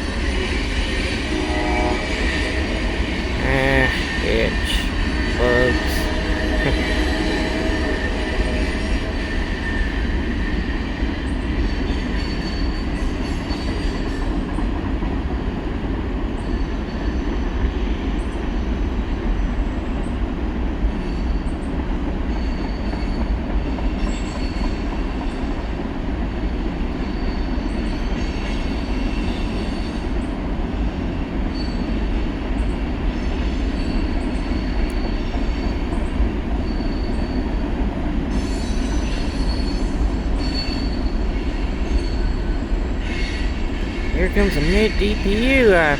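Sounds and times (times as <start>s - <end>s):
freight train cars rumbling: 0.0s - 13.8s.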